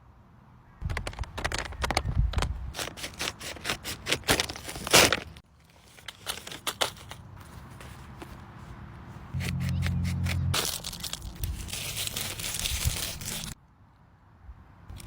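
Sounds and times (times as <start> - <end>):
paper packaging crinkling and tearing: 0.9 - 8.4, 9.4 - 13.6
paper rustling: 0.9 - 13.6.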